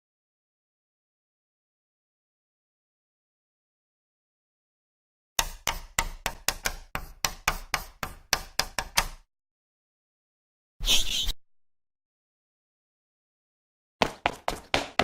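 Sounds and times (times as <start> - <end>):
running footsteps: 14.0 - 15.0.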